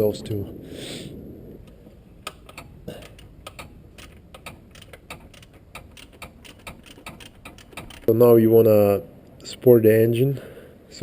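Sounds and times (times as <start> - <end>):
ratchet wrench clicking: 2.5 - 8.2.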